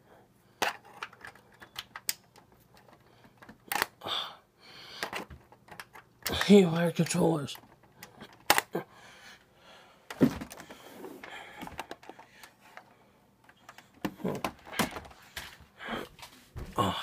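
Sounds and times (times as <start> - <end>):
plastic clicks of plugs: 0.6 - 4.0, 5.0 - 8.8
rustling of cables: 0.6 - 4.0, 4.8 - 17.0.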